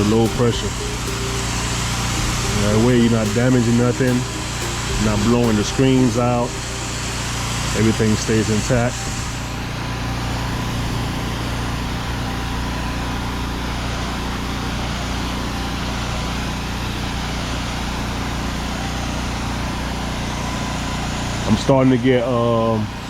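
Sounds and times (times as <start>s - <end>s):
water spray hiss: 0.0s - 15.5s
pressure washer engine running: 0.0s - 23.0s.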